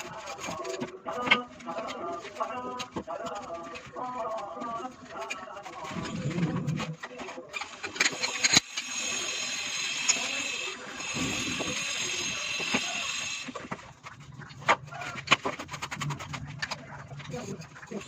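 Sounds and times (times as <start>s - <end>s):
machine running with high hiss: 8.4s - 13.5s.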